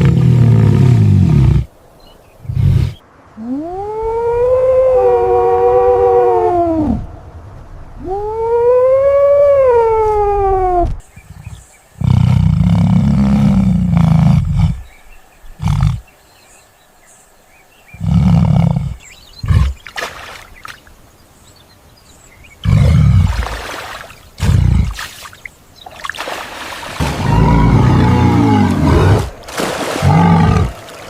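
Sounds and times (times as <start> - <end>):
deep low animal calls: 2.4 - 7.1, 8.0 - 16.1, 27.0 - 29.4
animal call rising and falling: 3.4 - 7.1, 27.0 - 29.3.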